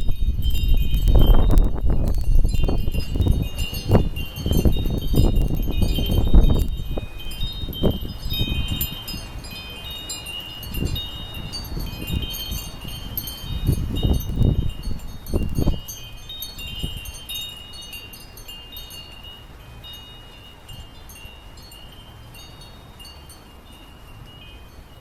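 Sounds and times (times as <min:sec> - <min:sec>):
wind buffeting microphone: 0:00.0 - 0:20.0
wind chimes ringing: 0:00.0 - 0:25.0.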